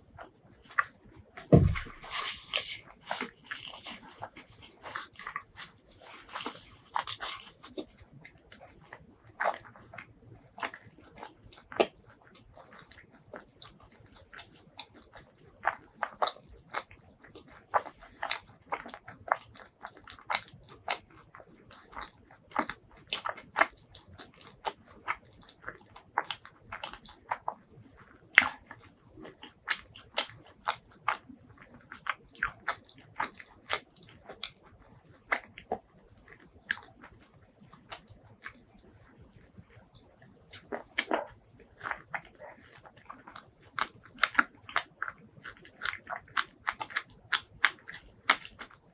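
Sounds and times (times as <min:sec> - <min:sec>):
person chewing food: 0:00.0 - 0:48.9
wet mouth clicks and smacks: 0:31.9 - 0:48.9.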